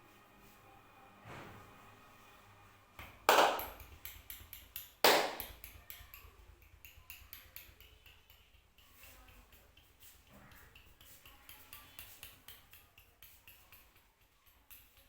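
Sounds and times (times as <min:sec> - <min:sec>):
loud sharp smacks: 0:03.3 - 0:03.8, 0:05.1 - 0:05.5
light rapid clicks and crackles: 0:03.6 - 0:15.0.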